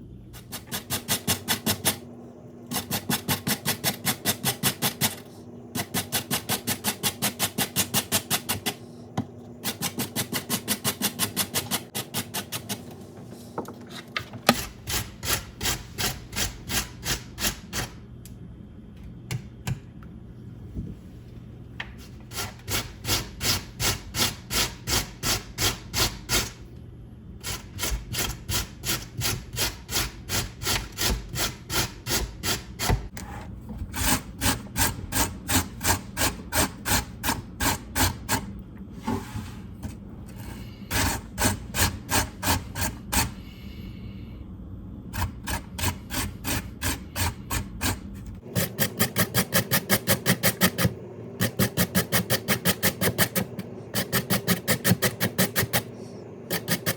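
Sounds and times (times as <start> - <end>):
potato rasping on a grater: 0.4 - 2.0, 2.7 - 8.8, 9.6 - 12.8, 27.4 - 33.0, 33.8 - 38.5, 40.3 - 43.5, 45.2 - 56.9.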